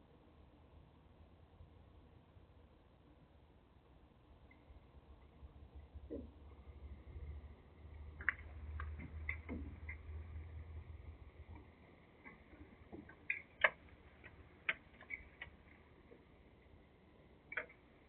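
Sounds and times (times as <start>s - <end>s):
low hum: 0.0s - 18.0s
faint irregular clicks: 4.4s - 18.0s.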